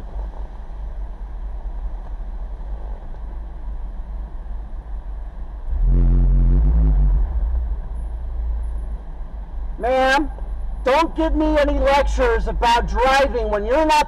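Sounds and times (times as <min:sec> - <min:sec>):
vehicle engine rumbling: 0:00.0 - 0:14.0
loud steady tone: 0:05.6 - 0:13.7.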